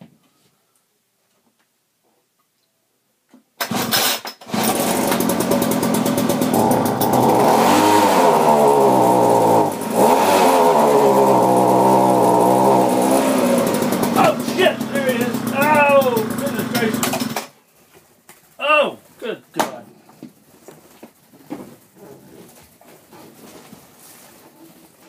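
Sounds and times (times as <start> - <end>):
loud motor running: 4.5 - 17.5.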